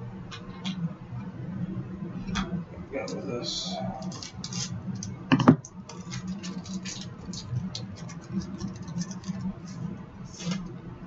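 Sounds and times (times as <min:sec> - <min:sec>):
trading cards crinkling and ticking: 0:04.0 - 0:10.7.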